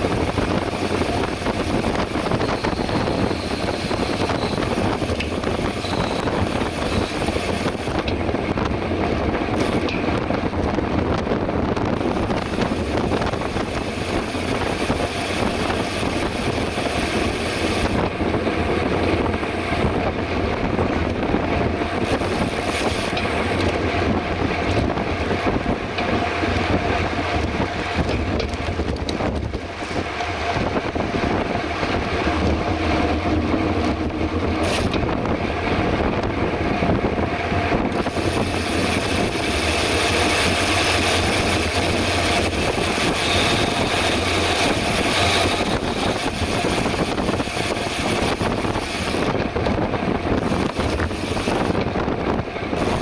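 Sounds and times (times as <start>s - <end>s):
bike tyre road noise: 0.0s - 53.0s
wind rushing over microphone: 0.0s - 53.0s.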